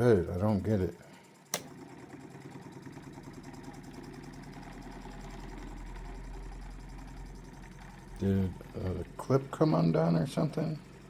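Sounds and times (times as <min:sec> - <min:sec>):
motor mechanical chatter: 0:00.0 - 0:11.0
switch click: 0:01.5 - 0:01.7
low motor hum: 0:01.6 - 0:11.0.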